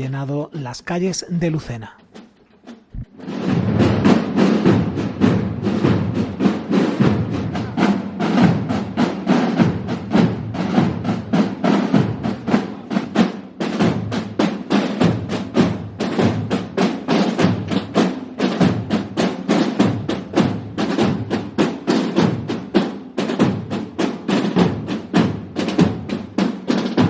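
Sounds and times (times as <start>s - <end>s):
drum band marching beat: 2.0s - 27.0s
snare rolls: 2.1s - 27.0s.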